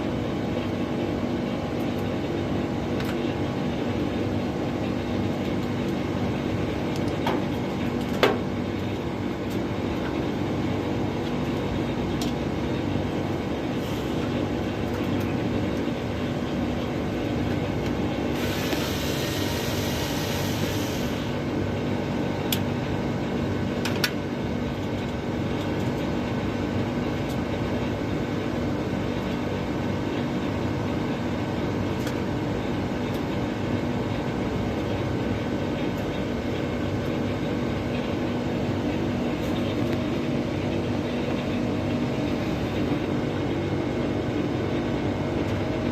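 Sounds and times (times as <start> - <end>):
air conditioner humming: 0.0 - 45.9
burst of hiss: 18.4 - 21.3.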